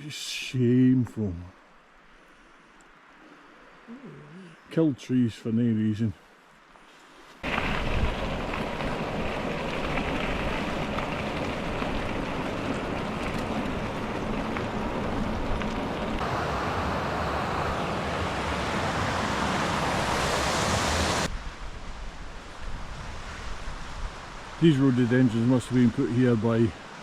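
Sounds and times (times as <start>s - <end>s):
wind buffeting microphone: 7.4s - 24.3s.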